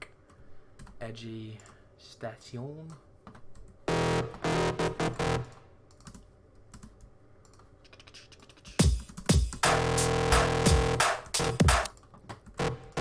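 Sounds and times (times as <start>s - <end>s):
distorted synth bass notes: 3.9s - 5.6s, 9.6s - 11.9s, 12.6s - 13.0s
computer keyboard and mouse clicks: 5.9s - 9.2s.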